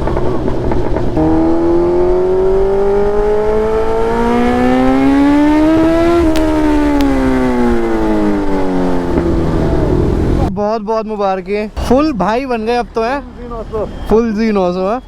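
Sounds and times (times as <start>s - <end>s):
motorcycle engine accelerating: 0.0s - 10.6s.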